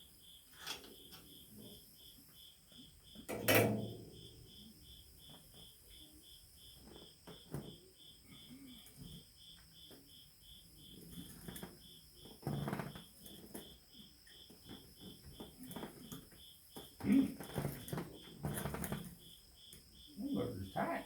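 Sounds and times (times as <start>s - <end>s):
insect chirping: 0.0s - 21.0s
tool knocks and clinks: 0.6s - 0.9s, 3.3s - 4.1s
loud clunk: 3.3s - 4.4s.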